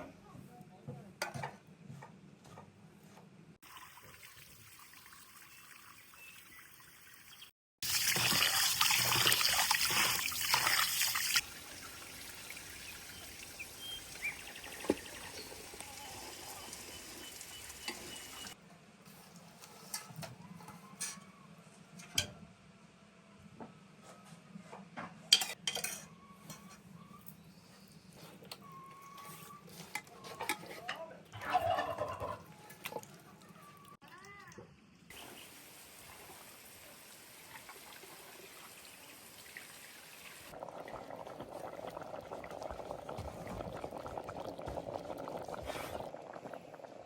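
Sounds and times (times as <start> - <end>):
water pouring: 3.6 - 18.6, 35.2 - 47.0.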